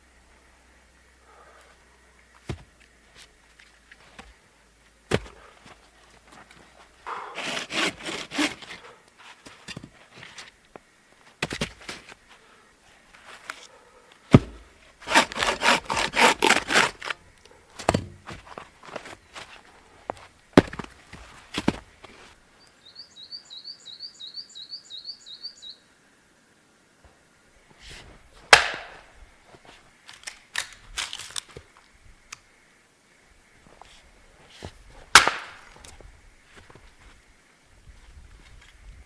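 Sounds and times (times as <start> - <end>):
axe chopping firewood: 5.1 - 5.4, 14.3 - 17.2, 17.8 - 19.1, 20.6 - 21.9, 28.5 - 29.1, 35.1 - 35.8
small bird calling: 22.6 - 25.8.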